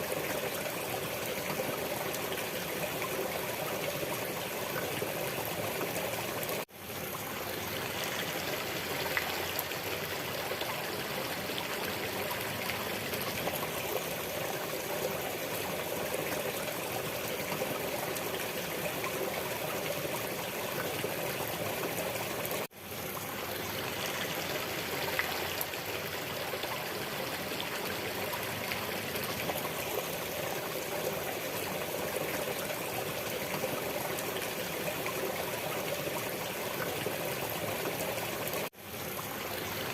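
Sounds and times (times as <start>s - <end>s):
stream of water trickling: 0.0s - 39.9s.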